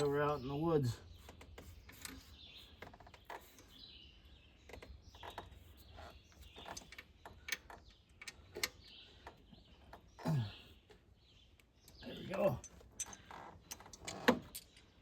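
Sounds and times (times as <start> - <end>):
faint bird chirps: 0.0 - 15.0
metallic clicks of tightening bolts: 6.6 - 9.4, 11.5 - 15.0.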